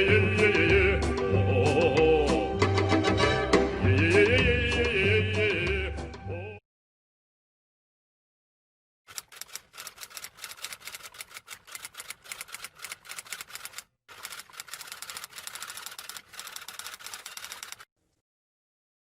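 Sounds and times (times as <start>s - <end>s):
typewriter keystrokes clattering: 9.1s - 17.8s.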